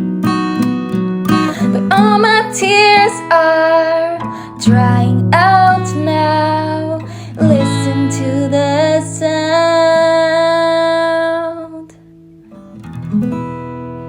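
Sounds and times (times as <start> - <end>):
acoustic guitar: 0.0 - 14.0
woman singing ballad: 1.4 - 12.0.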